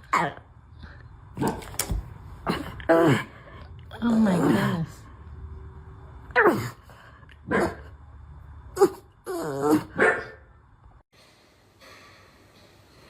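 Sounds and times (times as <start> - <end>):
dog barking and yelping: 9.8 - 10.5.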